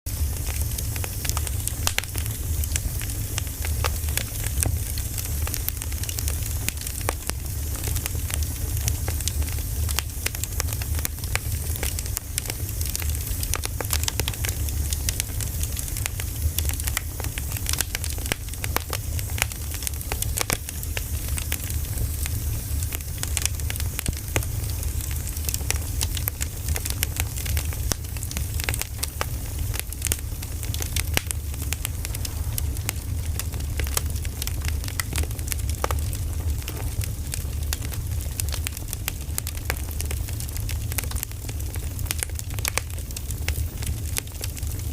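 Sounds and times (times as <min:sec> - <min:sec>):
bonfire crackling and popping: 0:00.1 - 0:44.9
low rumble: 0:28.6 - 0:38.1.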